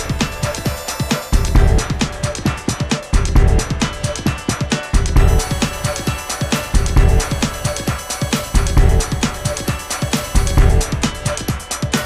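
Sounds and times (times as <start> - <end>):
electronic dance music: 0.0 - 12.0.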